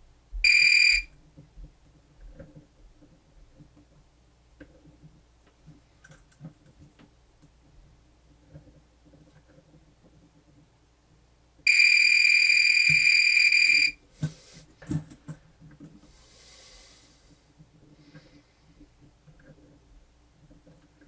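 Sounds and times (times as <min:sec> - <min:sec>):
multimeter continuity beep: 0:00.4 - 0:01.1, 0:11.7 - 0:14.0
test probes clicking and knocking: 0:11.7 - 0:16.0.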